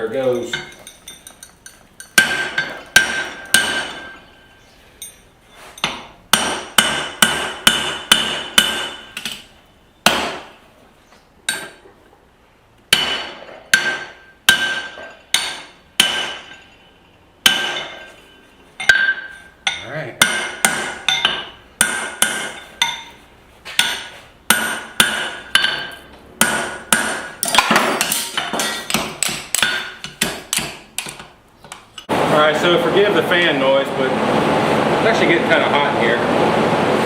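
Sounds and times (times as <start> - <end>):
hammer on steel anvil: 0.2 - 4.4, 5.8 - 10.5, 11.5 - 11.8, 12.9 - 31.2.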